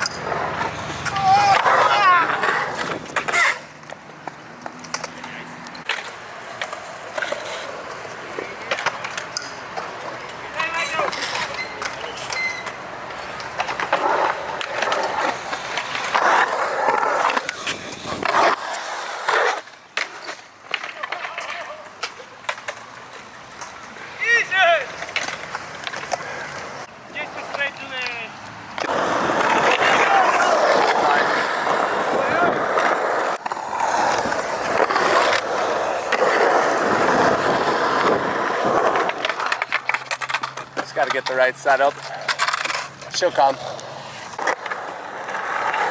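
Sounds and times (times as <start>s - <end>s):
skateboard clacks: 0.0s - 45.9s
skateboard scraping: 0.0s - 45.9s
skateboard wheels rolling on concrete: 0.0s - 45.9s.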